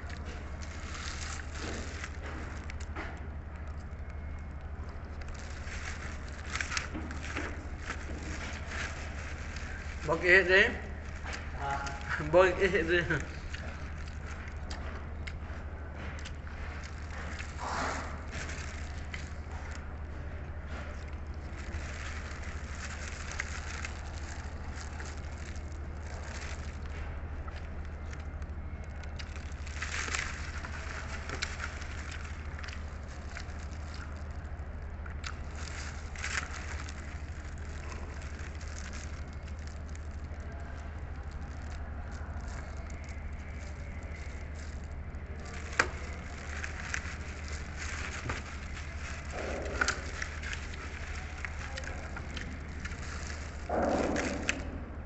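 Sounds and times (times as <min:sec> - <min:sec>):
crunching and chewing: 0:00.0 - 0:55.0
steady low hum: 0:00.0 - 0:55.0.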